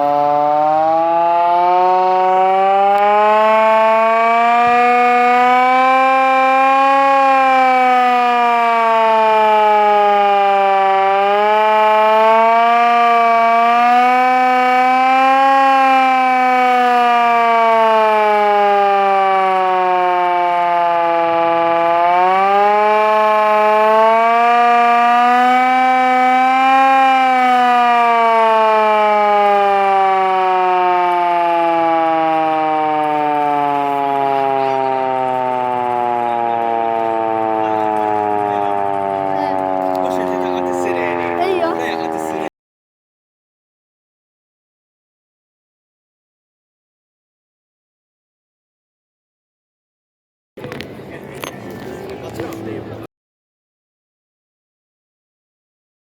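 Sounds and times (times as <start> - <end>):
air raid siren wailing: 0.0 - 42.5.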